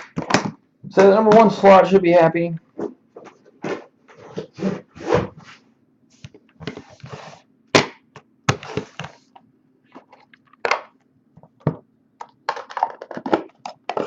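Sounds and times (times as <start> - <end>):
packaging clicks and snaps: 12.2 - 14.0.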